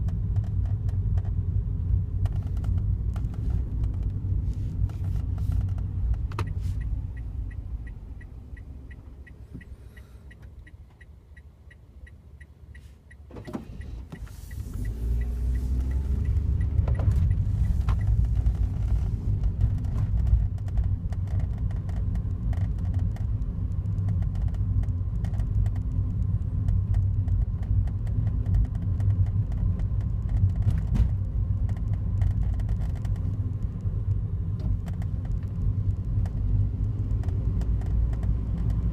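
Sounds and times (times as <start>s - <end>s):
car engine rumble: 0.0s - 38.9s.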